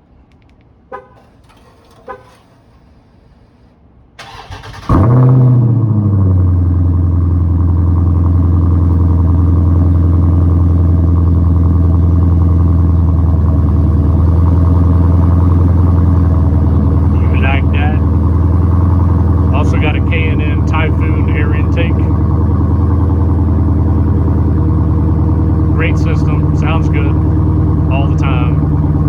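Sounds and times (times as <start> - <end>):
faint clicks: 0.3 - 0.7
car engine revving and idling: 0.9 - 29.0.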